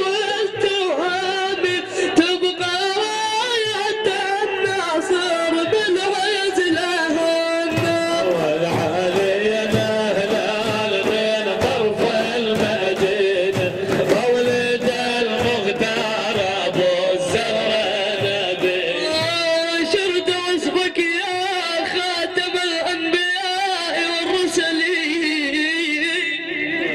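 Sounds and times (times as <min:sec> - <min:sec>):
hand drum strokes: 0:07.7 - 0:19.4.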